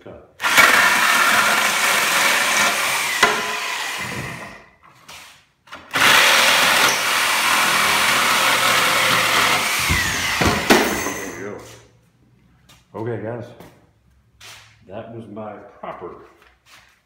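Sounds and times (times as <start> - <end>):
reciprocating saw cutting wood: 0.4 - 4.6, 6.0 - 10.9.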